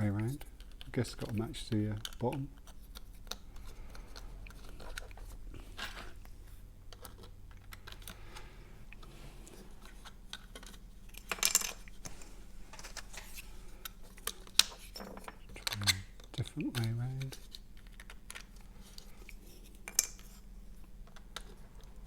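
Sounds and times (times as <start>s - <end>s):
plastic pieces clicking and clattering: 10.3s - 11.9s.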